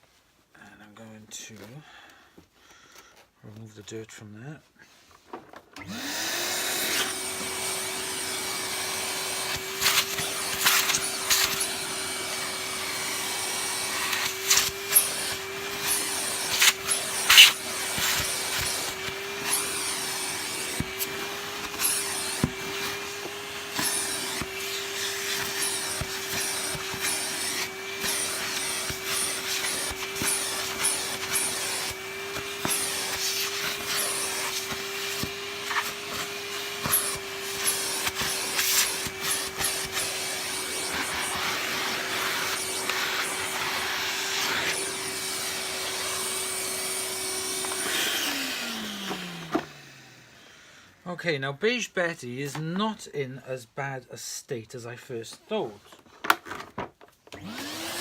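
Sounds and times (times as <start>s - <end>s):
vacuum cleaner motor running: 5.8s - 51.0s, 57.3s - 58.0s.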